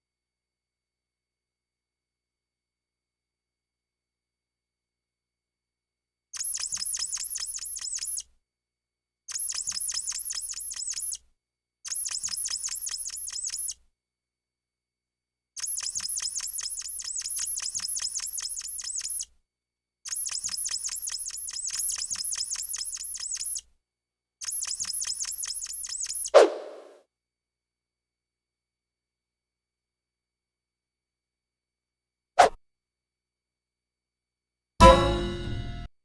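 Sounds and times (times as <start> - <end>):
rapid squeaky cartoon clicking: 6.4 - 8.3, 9.3 - 11.2, 11.9 - 13.8, 15.6 - 19.3, 20.1 - 23.7, 24.4 - 26.4.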